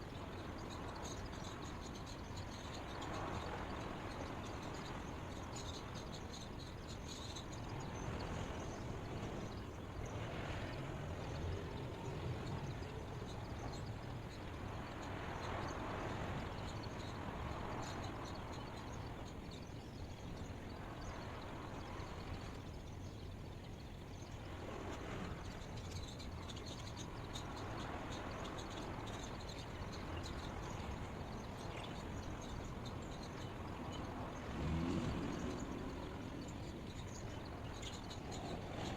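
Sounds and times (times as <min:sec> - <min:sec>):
even outdoor hiss: 0:00.0 - 0:38.9.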